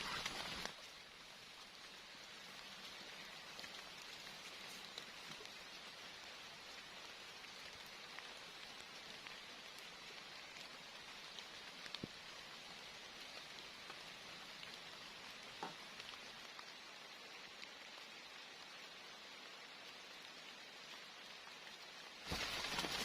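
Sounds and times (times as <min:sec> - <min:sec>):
steady rain falling: 0:00.0 - 0:23.0.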